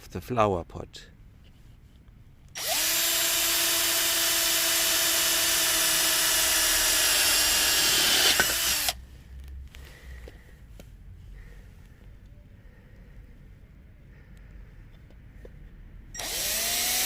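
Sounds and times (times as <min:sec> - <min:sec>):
power drill boring through pot: 0:02.6 - 0:09.0, 0:16.2 - 0:17.0.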